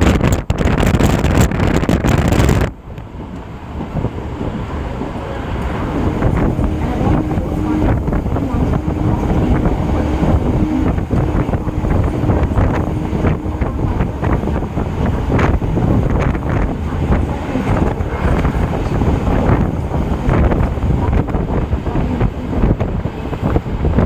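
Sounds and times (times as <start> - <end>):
train rumbling in motion: 0.0 - 24.0
wind buffeting microphone: 0.0 - 24.0
faint steady hum: 4.8 - 23.4.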